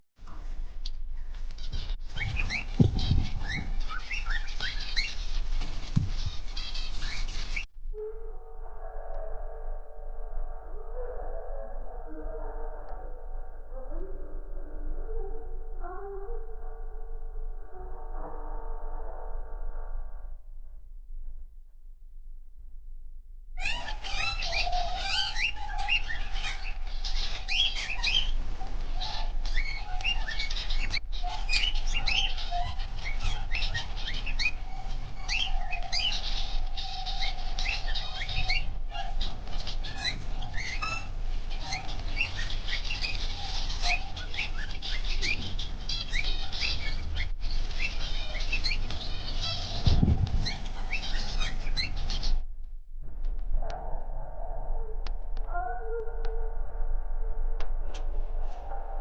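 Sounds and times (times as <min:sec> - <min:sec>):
finches chirping: 0:01.6 - 0:07.7, 0:23.6 - 0:52.4.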